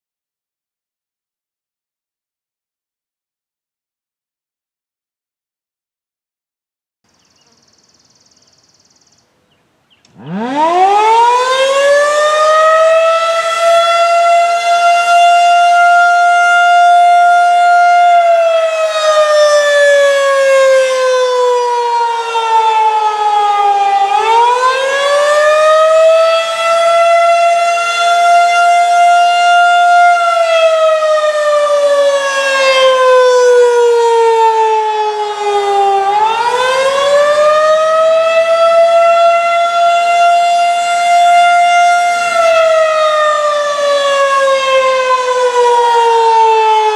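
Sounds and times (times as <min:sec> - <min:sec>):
warning siren rising and falling: 0:10.0 - 0:46.9.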